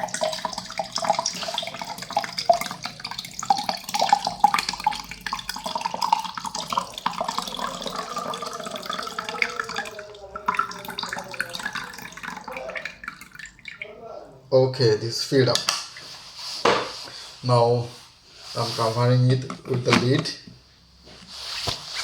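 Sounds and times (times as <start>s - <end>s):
water pouring into kettle: 0.0s - 13.9s.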